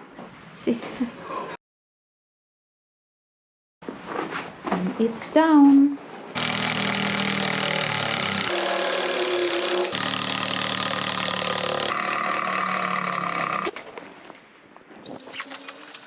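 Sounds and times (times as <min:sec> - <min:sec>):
motor running: 0:06.4 - 0:13.7, 0:15.1 - 0:16.0.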